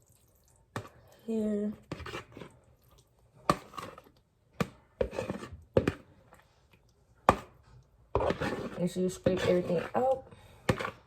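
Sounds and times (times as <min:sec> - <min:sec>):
utensil scraping a bowl: 0:01.7 - 0:02.6, 0:03.4 - 0:06.4, 0:07.2 - 0:11.0.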